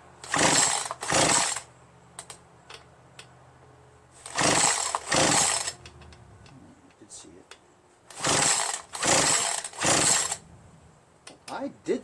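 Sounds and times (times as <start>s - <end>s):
chainsaw recoil starter pulls: 0.2s - 2.4s, 4.2s - 6.1s, 8.1s - 10.4s.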